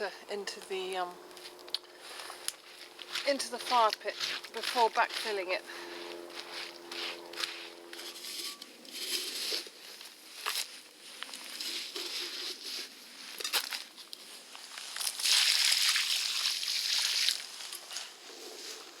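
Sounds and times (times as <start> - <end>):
scrapes and knocks: 7.9 - 9.7.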